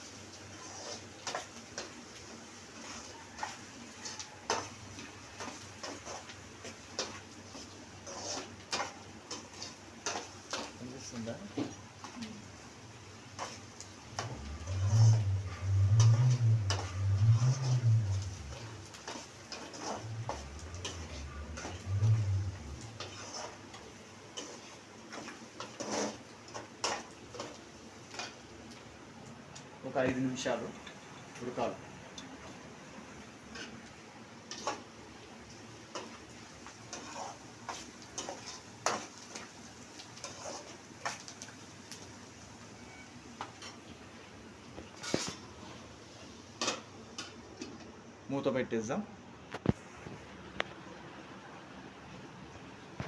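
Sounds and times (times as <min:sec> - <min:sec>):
onions frying in oil: 0:00.0 - 0:51.3
spoon scraping and tapping pan: 0:13.4 - 0:28.4.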